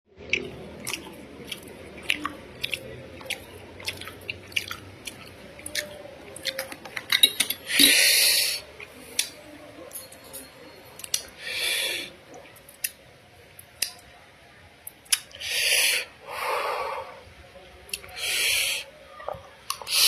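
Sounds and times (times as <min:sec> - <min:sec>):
person chewing noodles: 0:00.2 - 0:09.4, 0:14.8 - 0:17.0.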